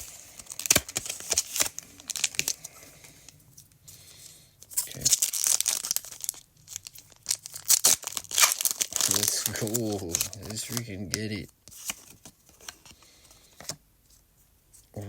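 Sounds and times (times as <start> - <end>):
foil wrapper crinkling and tearing: 0.0 - 3.3, 4.8 - 12.2.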